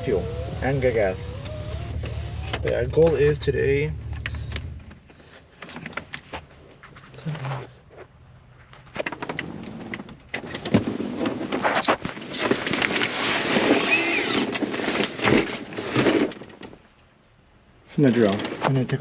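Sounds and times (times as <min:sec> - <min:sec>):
rustling: 0:04.0 - 0:17.1.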